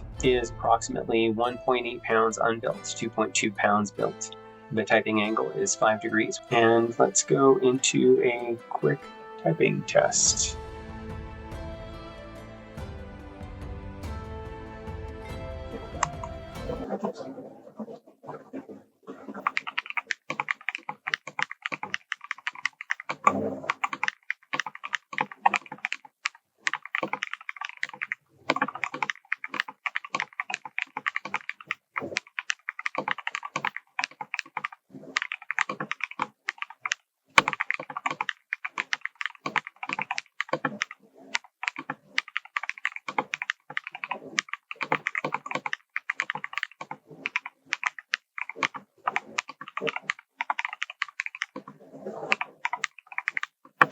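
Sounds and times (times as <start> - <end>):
mechanical keyboard typing: 4.9 - 9.0, 15.9 - 16.8, 19.4 - 53.9.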